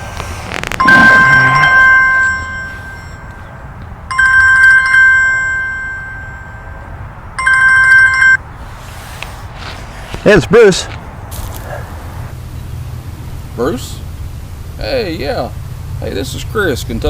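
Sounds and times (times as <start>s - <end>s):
telephone ringing: 0.8s - 3.5s, 4.1s - 6.5s, 7.4s - 8.4s.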